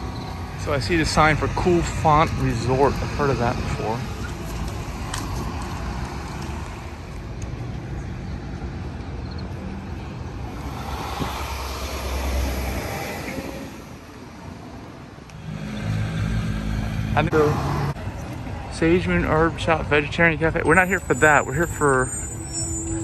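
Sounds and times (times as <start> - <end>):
street traffic: 0.0 - 23.0
car passing close: 8.0 - 18.3.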